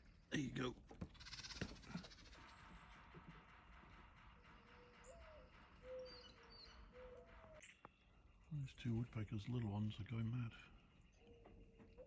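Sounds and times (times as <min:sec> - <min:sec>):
soft whistled bird notes: 0:04.6 - 0:09.0
high bird chirps: 0:04.8 - 0:08.5.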